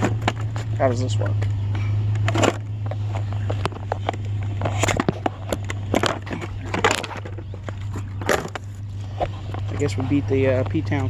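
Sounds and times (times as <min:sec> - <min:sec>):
low hum: 0:00.0 - 0:11.0
knocks and clatter of handling: 0:02.2 - 0:10.0.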